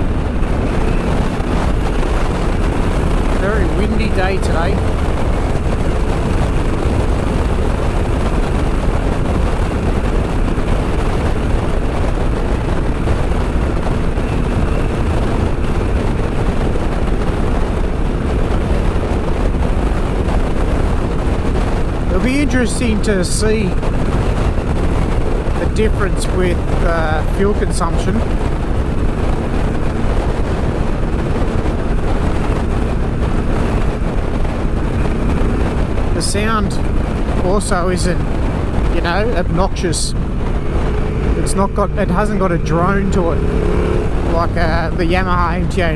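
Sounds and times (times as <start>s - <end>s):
motorcycle engine running: 0.0s - 45.9s
wind rushing over microphone: 0.0s - 45.9s.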